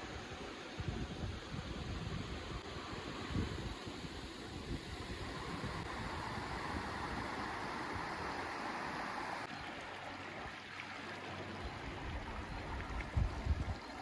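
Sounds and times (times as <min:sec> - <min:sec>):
river water rushing: 0:05.3 - 0:13.2.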